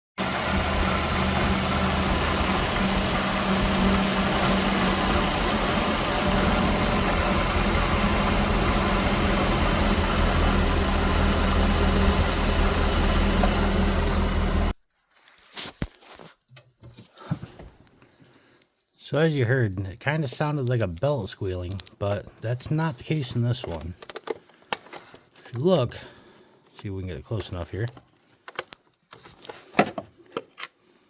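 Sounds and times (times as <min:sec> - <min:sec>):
engine fan squealing: 0:00.2 - 0:14.7
vehicle engine running: 0:00.2 - 0:14.7.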